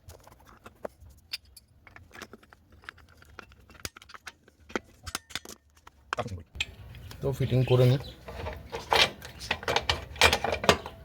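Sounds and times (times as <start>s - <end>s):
metal parts and tools clinking: 0.1s - 11.0s.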